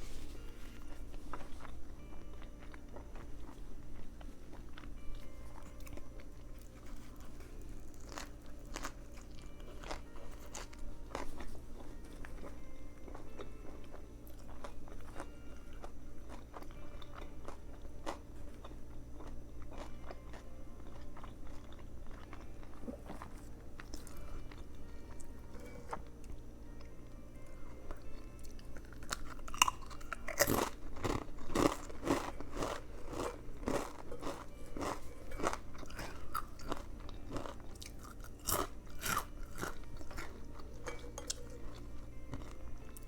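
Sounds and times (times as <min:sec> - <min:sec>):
steady low hum: 0:00.0 - 0:43.0.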